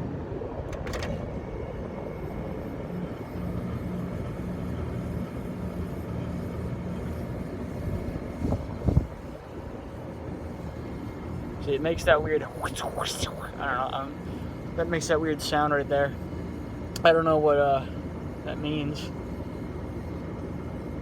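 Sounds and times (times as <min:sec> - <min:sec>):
air conditioner humming: 0:01.5 - 0:19.4
faint high whine: 0:09.2 - 0:21.0.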